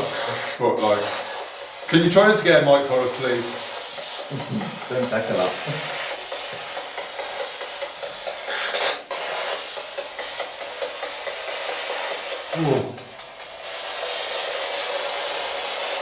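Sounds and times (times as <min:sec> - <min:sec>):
radio static hiss: 0:00.0 - 0:16.0
falling-pitch snatch of sound: 0:12.5 - 0:13.3.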